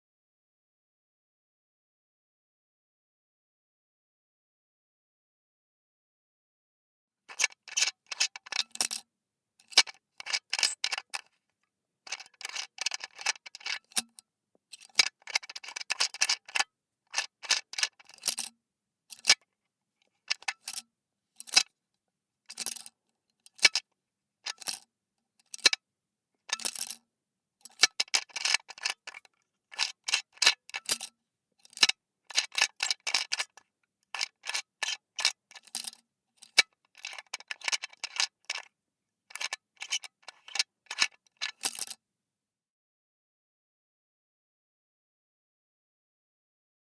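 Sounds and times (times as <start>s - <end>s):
screw cap thread scraping: 7.3s - 8.9s, 9.7s - 11.3s, 12.1s - 14.2s, 14.8s - 18.4s, 20.3s - 20.8s, 27.7s - 31.0s, 34.2s - 38.7s, 39.3s - 41.8s.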